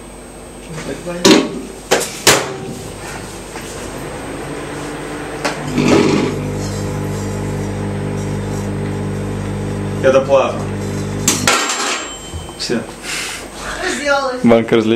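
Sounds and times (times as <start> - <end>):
microwave electrical buzz: 1.6 - 12.7
loud rush: 2.7 - 10.2.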